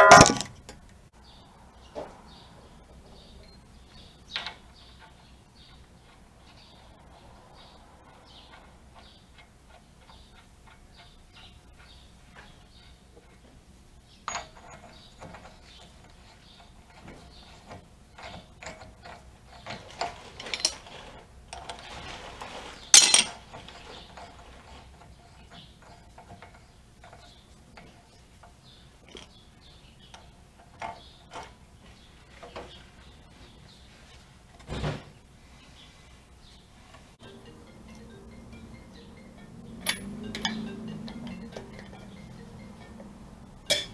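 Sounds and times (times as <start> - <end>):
loud metallic clank: 0.0 - 0.6, 43.7 - 43.9
metal parts clicking and clinking: 0.0 - 0.8, 14.2 - 31.6, 38.8 - 43.9.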